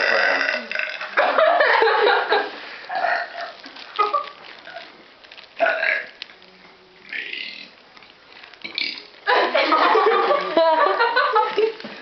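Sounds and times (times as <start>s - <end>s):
woman burping: 0.0s - 1.2s.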